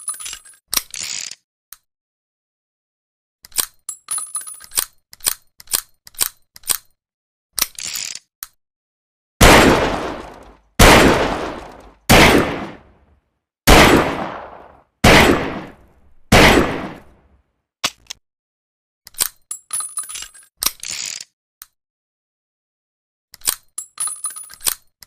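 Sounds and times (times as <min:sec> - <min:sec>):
metallic clicks: 0:03.4 - 0:07.0, 0:23.3 - 0:25.0
revolver shots echoing: 0:09.4 - 0:13.0, 0:13.7 - 0:17.2.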